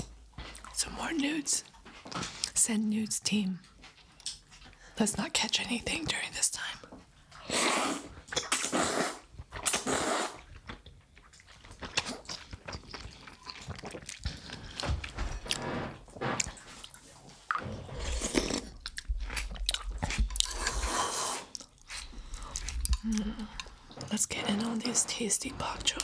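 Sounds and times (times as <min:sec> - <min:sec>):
wet chewing with mouth clicks: 0:00.0 - 0:00.8, 0:01.6 - 0:02.6, 0:03.3 - 0:06.1, 0:06.7 - 0:26.0
noodle slurping: 0:07.4 - 0:10.7, 0:11.6 - 0:26.0.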